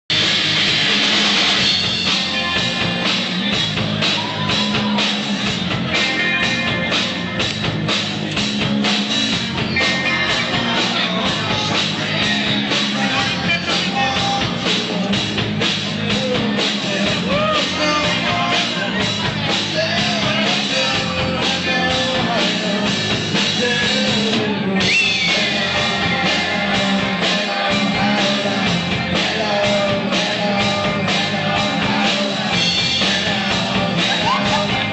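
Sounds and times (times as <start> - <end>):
drum kit beat: 0.1 - 34.9
rock band playing: 0.1 - 34.9
person singing: 9.7 - 34.9.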